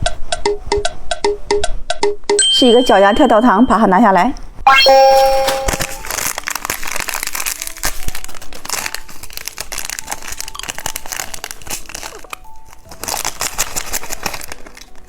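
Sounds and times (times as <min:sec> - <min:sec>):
candy wrapper crinkling: 0:05.1 - 0:15.0.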